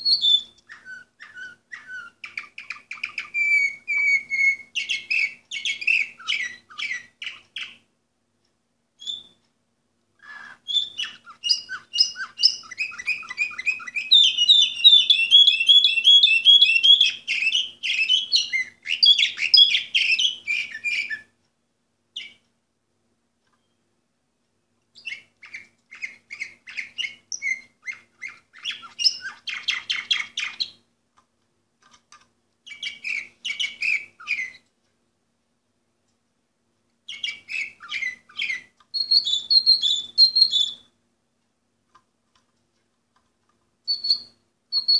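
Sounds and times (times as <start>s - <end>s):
canary singing trills: 0.0s - 7.9s, 9.0s - 9.4s, 10.2s - 21.4s, 22.1s - 22.5s, 24.9s - 30.9s, 31.8s - 34.7s, 37.0s - 41.0s, 43.8s - 44.9s.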